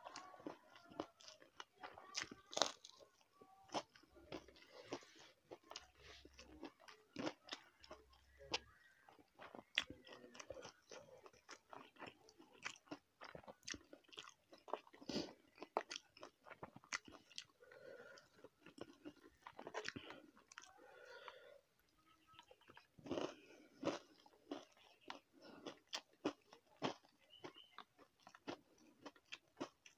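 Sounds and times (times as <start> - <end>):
person chewing food: 0.0 - 29.9.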